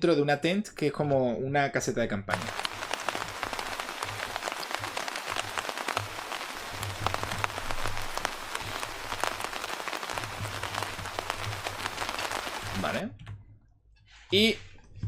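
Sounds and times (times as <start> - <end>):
hiss of rain: 2.3 - 13.1
rain pattering on tent fabric: 2.3 - 13.1.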